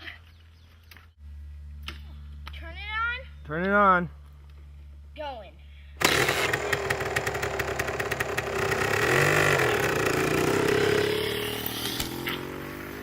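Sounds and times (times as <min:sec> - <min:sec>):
electric dirt bike motor whining: 0:06.0 - 0:13.0.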